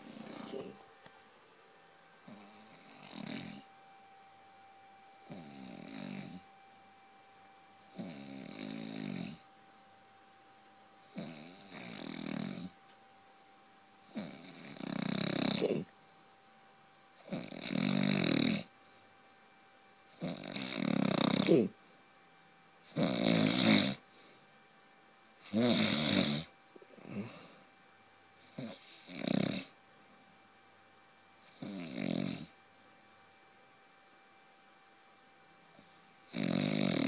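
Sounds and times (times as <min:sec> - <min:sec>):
man snoring loudly: 0:00.0 - 0:00.8, 0:02.3 - 0:03.7, 0:05.2 - 0:06.4, 0:07.9 - 0:09.4, 0:11.1 - 0:12.7, 0:14.1 - 0:15.9, 0:17.2 - 0:18.7, 0:20.2 - 0:21.8, 0:22.9 - 0:24.0, 0:25.4 - 0:27.5, 0:28.5 - 0:29.8, 0:31.5 - 0:32.5, 0:36.3 - 0:37.0.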